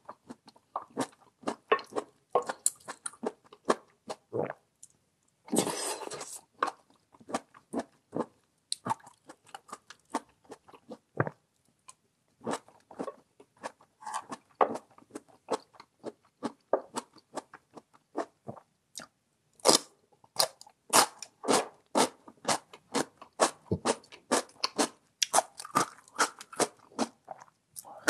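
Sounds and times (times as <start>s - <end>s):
chewing crunchy radish: 19.0s - 28.0s.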